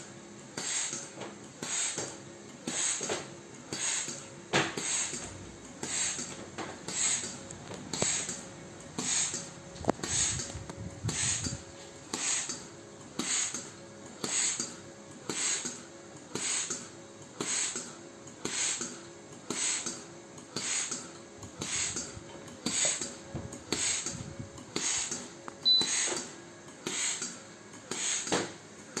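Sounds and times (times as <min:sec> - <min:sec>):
ventilator machine hissing: 0:00.0 - 0:29.0
motor whine: 0:05.0 - 0:13.3.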